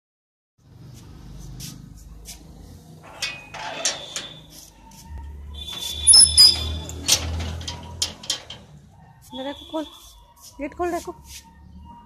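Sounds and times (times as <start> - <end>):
metal gate rattling: 3.0 - 4.6, 5.6 - 8.9
high squeak: 3.1 - 4.6, 5.6 - 8.0.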